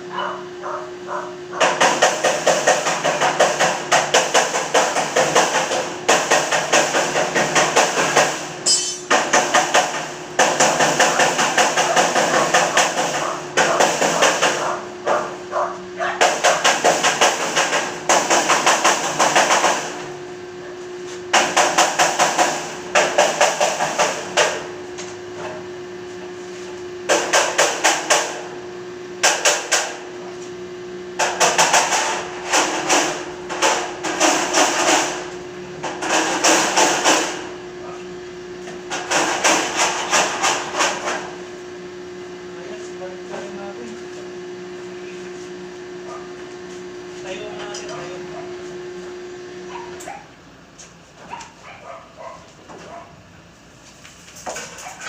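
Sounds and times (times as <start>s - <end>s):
steady hum: 8.4s - 10.4s
hammer striking steel: 8.6s - 9.2s.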